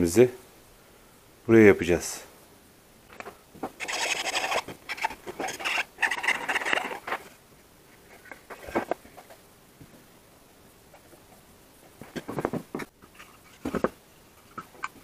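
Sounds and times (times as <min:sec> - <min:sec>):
parts scratching and scraping: 0:03.1 - 0:09.4, 0:10.9 - 0:15.0.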